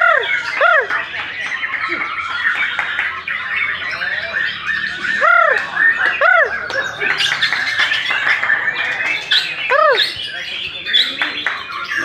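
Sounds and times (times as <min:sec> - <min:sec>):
birds chattering and trilling: 0:00.0 - 0:12.0.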